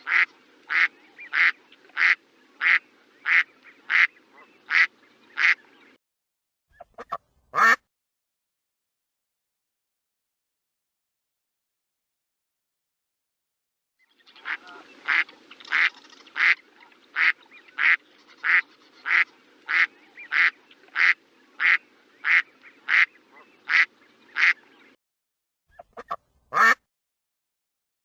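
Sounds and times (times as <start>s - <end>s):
duck quacking: 0.0s - 5.6s, 6.8s - 7.8s, 14.4s - 16.6s, 17.2s - 24.6s, 25.7s - 26.8s.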